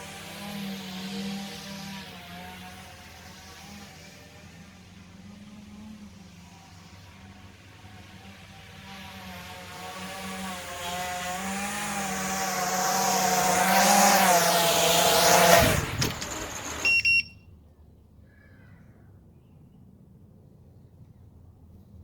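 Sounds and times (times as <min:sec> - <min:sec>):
drone motors whining: 0:00.0 - 0:17.2
short high electronic beeps: 0:16.8 - 0:17.4.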